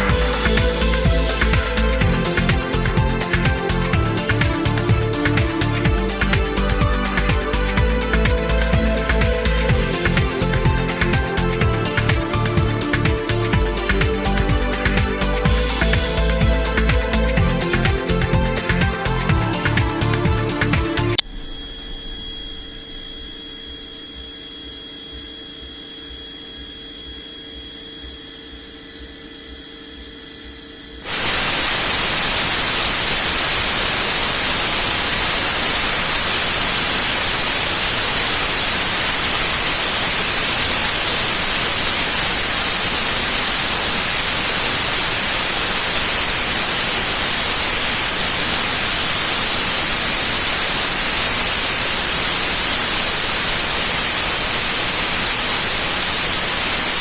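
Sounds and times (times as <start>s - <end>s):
loud even hiss: 0.0s - 24.4s, 31.0s - 57.0s
faint hum with high whine: 0.0s - 57.0s.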